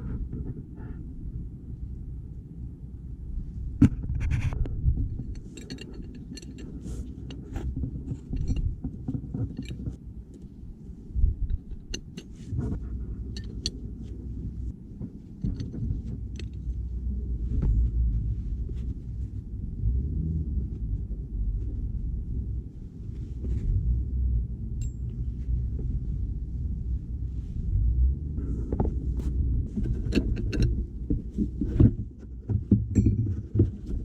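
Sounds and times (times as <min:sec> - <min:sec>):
steady low rumble: 0:00.0 - 0:34.0
metal tools clinking and scraping: 0:05.3 - 0:08.7, 0:09.4 - 0:10.0, 0:13.3 - 0:13.8.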